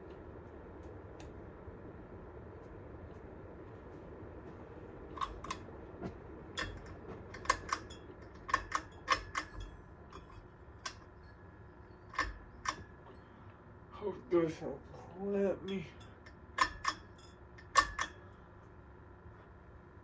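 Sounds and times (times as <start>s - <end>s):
steady low hum: 0.0s - 20.0s
sharp metallic clicks and clinks: 5.2s - 5.6s, 6.6s - 13.3s, 15.7s - 18.3s.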